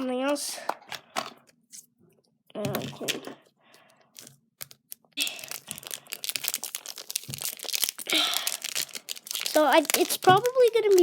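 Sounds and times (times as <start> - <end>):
plastic packaging crinkling: 2.6 - 11.0.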